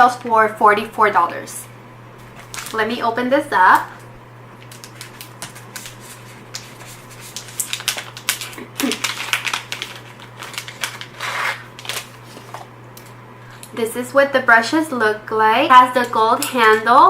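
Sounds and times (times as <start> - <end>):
packaging crinkling and rustling: 2.2 - 2.8, 4.6 - 12.7.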